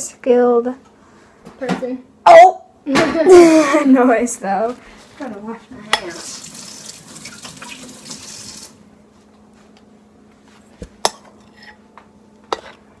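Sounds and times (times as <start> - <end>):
water running from sink tap: 6.0 - 8.8.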